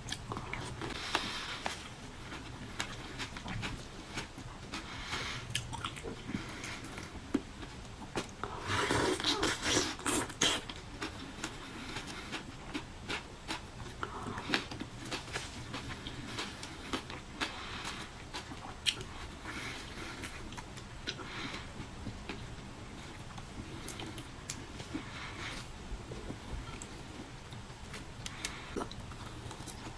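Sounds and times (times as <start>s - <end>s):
chewing with wet mouth smacks: 5.5s - 6.2s.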